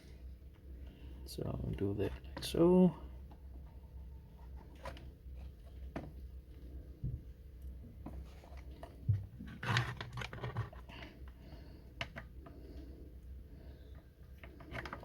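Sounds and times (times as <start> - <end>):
wire rustling and scraping: 8.0 - 11.7.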